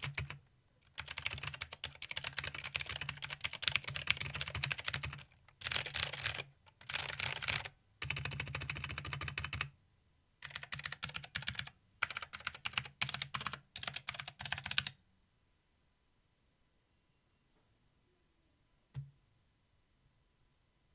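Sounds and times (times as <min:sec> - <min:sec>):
mechanical keyboard typing: 0:00.0 - 0:09.7, 0:10.4 - 0:14.9.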